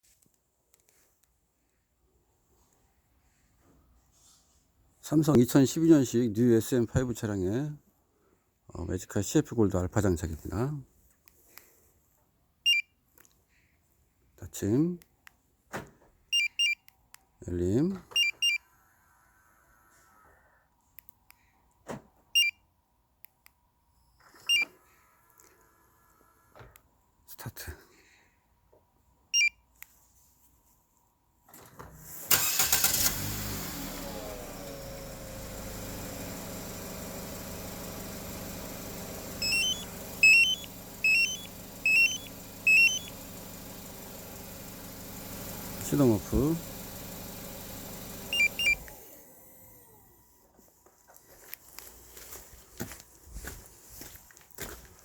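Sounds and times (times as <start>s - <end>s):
car alarm chirping: 12.7s - 12.9s, 16.3s - 16.9s, 18.1s - 19.0s, 22.4s - 22.6s, 24.2s - 24.8s, 38.6s - 43.7s, 48.2s - 48.9s
car engine idling: 32.3s - 50.1s
short electronic beeps: 39.4s - 43.1s, 48.3s - 48.8s.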